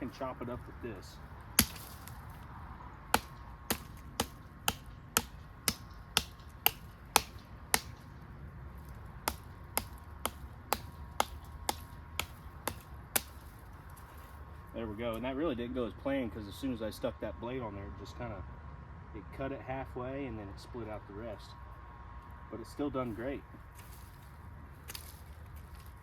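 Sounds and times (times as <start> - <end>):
knife chopping wood: 1.6 - 2.4, 3.1 - 8.1, 8.9 - 13.6.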